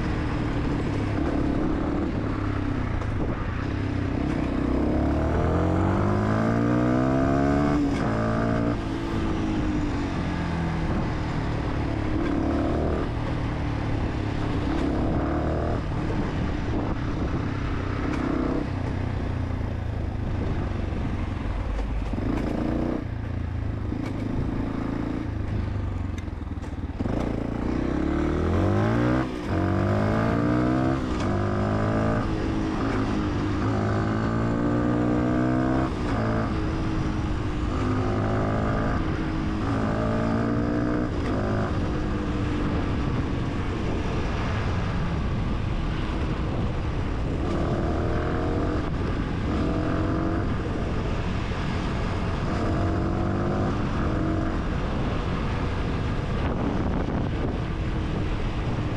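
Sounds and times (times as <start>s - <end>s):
motorcycle engine revving: 0.0s - 58.9s.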